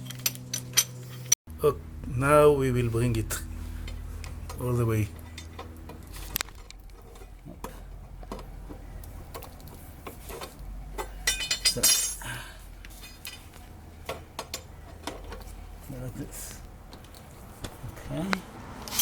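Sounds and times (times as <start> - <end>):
car jack clinking and rattling: 10.3 - 12.2.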